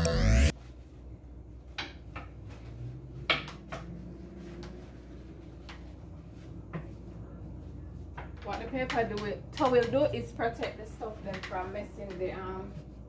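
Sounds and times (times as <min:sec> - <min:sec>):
background music: 0:00.0 - 0:00.5.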